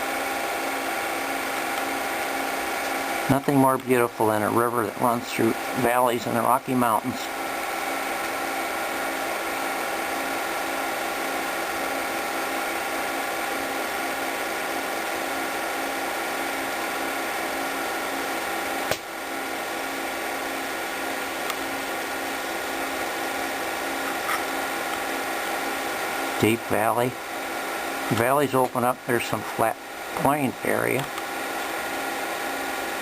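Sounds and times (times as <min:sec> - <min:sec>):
film projector whirring: 0:00.0 - 0:33.0
sharp click: 0:18.9 - 0:19.1.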